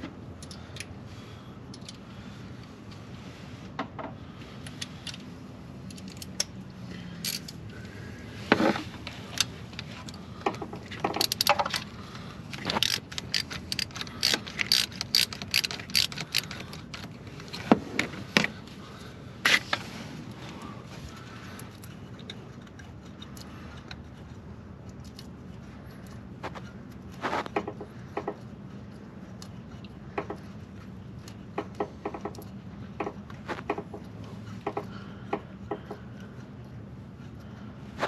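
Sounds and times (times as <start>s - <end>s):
ratchet wrench clicking: 7.2s - 7.6s, 9.4s - 11.9s, 12.5s - 17.6s.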